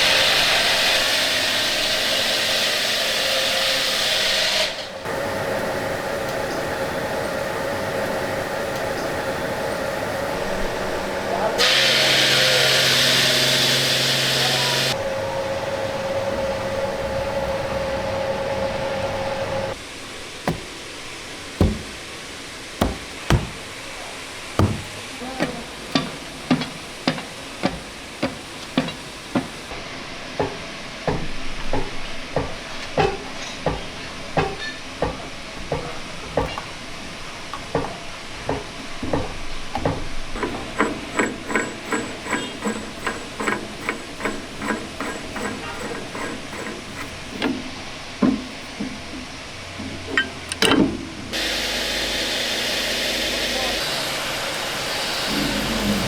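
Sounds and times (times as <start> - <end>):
loud hiss: 11.6 - 15.0
sharp knocks: 20.5 - 20.9, 21.6 - 22.2, 22.8 - 23.7, 24.6 - 29.6.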